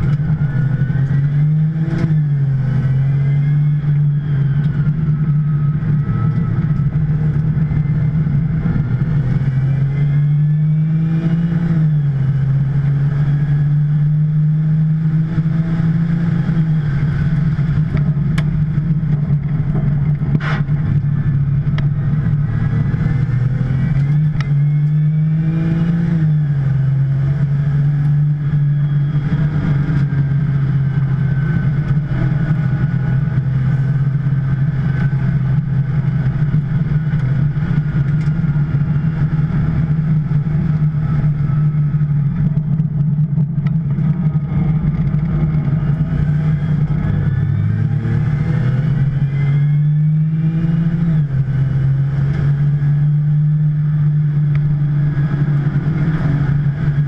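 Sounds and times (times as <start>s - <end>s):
sports car engine at racing speed: 0.0s - 57.0s.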